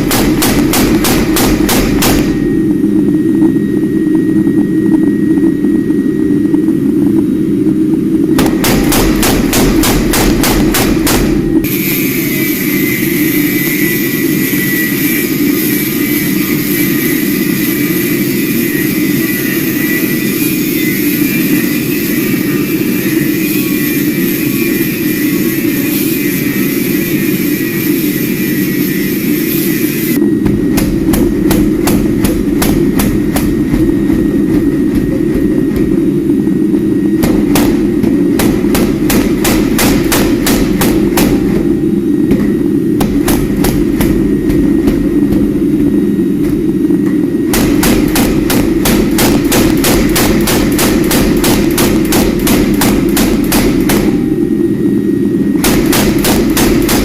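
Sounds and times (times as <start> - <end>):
steady low drone: 0.0 - 57.0
hammer striking steel on anvil: 8.4 - 36.0, 37.2 - 46.7, 47.5 - 54.2.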